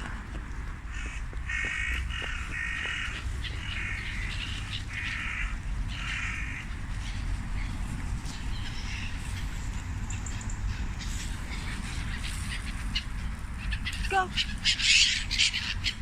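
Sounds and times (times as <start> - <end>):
steady low rumble: 0.0 - 12.1
harsh bird calls: 0.9 - 7.7, 8.4 - 16.0.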